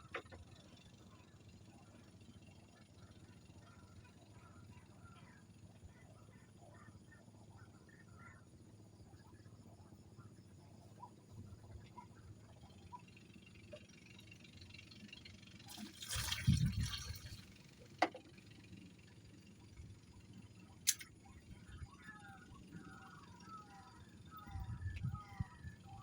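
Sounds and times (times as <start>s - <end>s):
water splashing: 15.7s - 18.0s.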